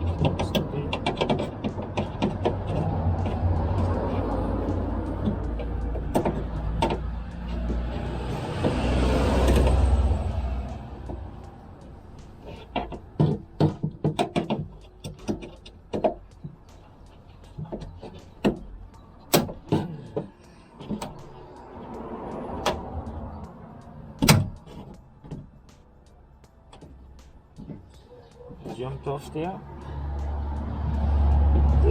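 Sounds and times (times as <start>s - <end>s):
tool prying plastic clips: 0.0s - 3.3s.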